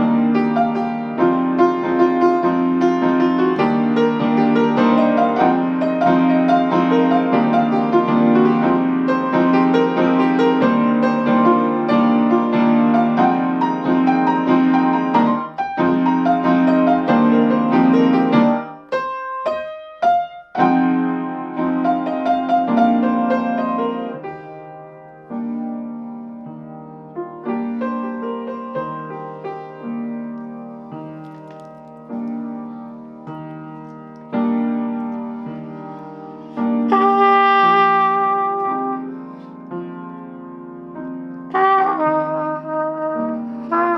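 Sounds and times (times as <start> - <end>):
improvised piano playing: 0.0 - 43.9
brass-like chord: 36.6 - 39.7, 41.5 - 43.9.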